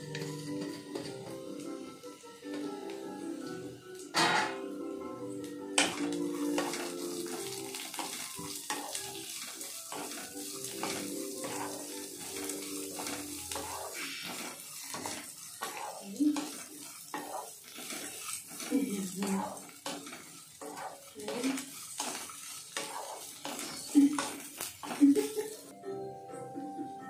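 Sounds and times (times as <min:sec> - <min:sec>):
utensil scraping a pan: 0:00.0 - 0:01.3, 0:04.1 - 0:04.6, 0:05.8 - 0:25.3
held musical tones: 0:00.0 - 0:07.6, 0:25.7 - 0:27.0
food sizzling: 0:00.0 - 0:27.0.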